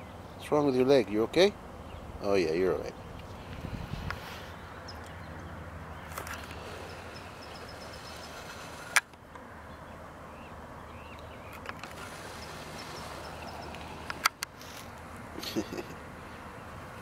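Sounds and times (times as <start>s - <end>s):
birds chirping: 0.0s - 17.0s
vehicle engine idling: 4.4s - 9.9s, 10.8s - 17.0s
sharp click: 13.7s - 14.6s.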